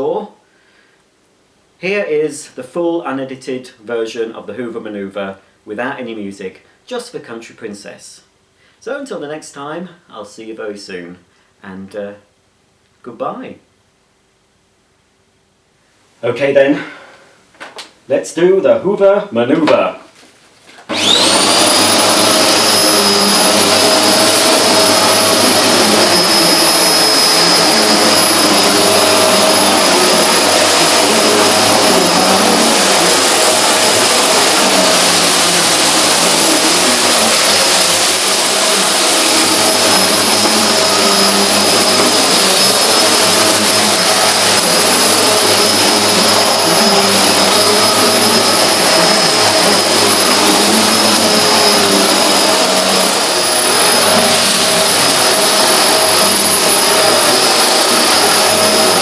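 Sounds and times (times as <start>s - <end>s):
vacuum cleaner motor screaming: 20.9s - 59.0s.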